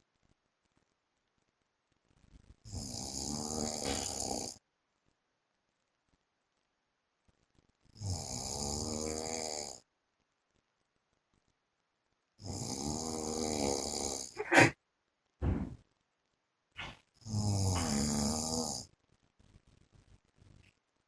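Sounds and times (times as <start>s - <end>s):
man snoring: 2.7s - 4.6s, 8.0s - 9.8s, 12.4s - 14.8s, 17.2s - 18.9s.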